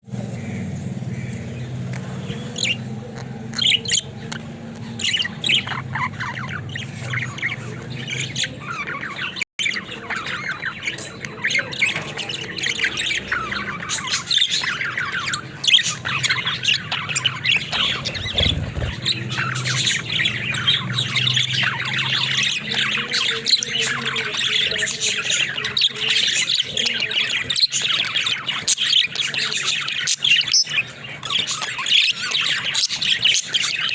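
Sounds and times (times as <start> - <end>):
budgerigars chattering: 12.4 - 25.8.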